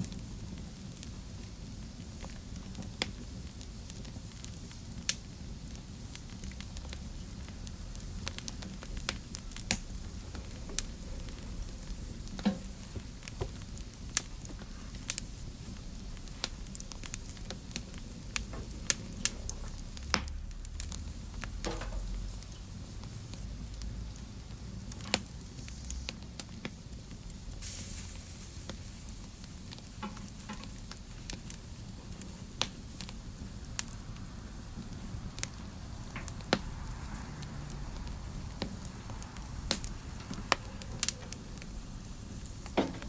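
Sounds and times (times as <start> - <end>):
burning wood hissing: 0.0 - 43.0
fire crackling and popping: 0.0 - 43.0
wood fire burning: 0.0 - 43.0.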